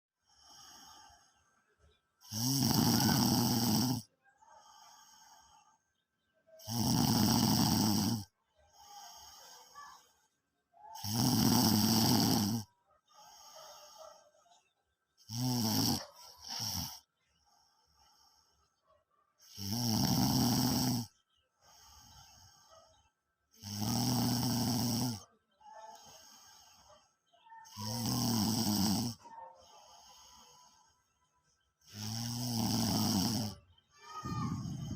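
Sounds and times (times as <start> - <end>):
quiet breaths: 0.2 - 34.9
heavy snoring: 2.2 - 4.1, 6.6 - 10.0, 11.0 - 14.2, 15.2 - 17.1, 19.4 - 21.2, 23.5 - 25.3, 27.6 - 31.0, 31.8 - 33.7, 34.5 - 34.9.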